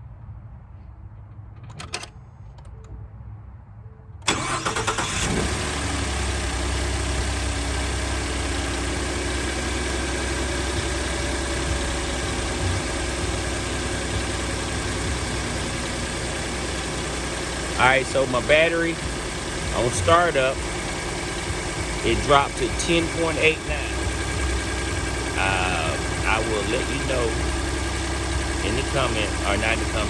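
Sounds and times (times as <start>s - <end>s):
truck engine idling: 4.2s - 30.0s
starter cranking: 4.3s - 5.5s.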